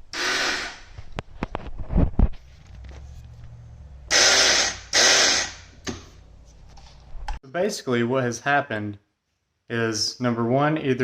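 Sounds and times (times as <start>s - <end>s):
electric starter whirring: 0.0s - 1.0s, 2.6s - 6.0s.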